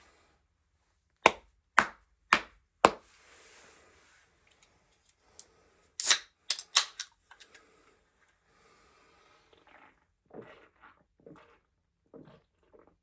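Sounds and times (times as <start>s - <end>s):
objects clicking and knocking: 6.0s - 7.6s.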